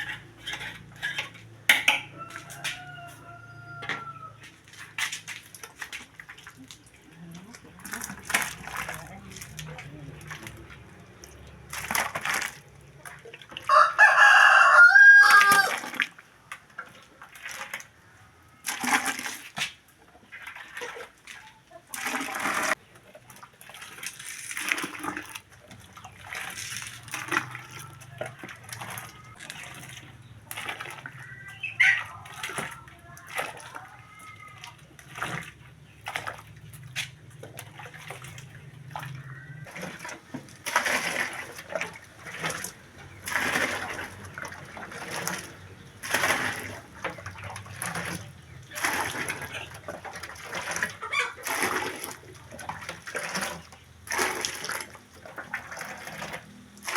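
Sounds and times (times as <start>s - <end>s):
rooster crowing: 2.0s - 4.4s, 13.7s - 15.8s
chicken calling: 31.3s - 32.2s, 51.0s - 51.5s.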